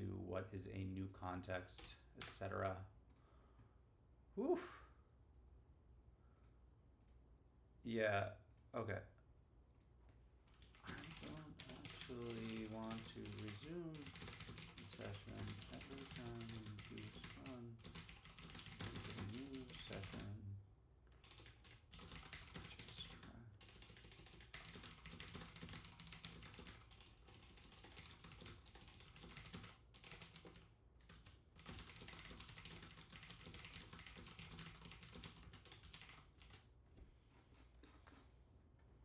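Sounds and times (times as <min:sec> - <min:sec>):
typing on a computer keyboard: 0:10.5 - 0:20.4, 0:21.1 - 0:36.7.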